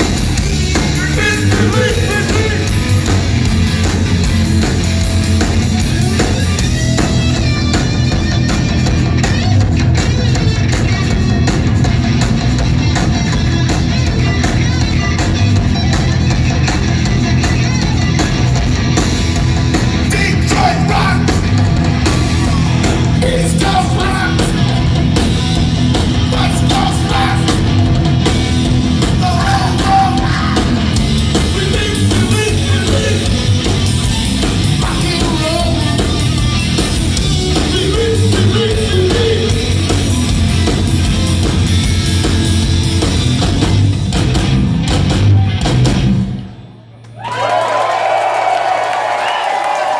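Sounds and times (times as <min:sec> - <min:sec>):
punk rock band playing: 0:00.0 - 0:46.6
person shouting singing: 0:01.0 - 0:02.8, 0:20.1 - 0:21.4, 0:22.4 - 0:24.6, 0:26.3 - 0:27.6, 0:29.2 - 0:30.8.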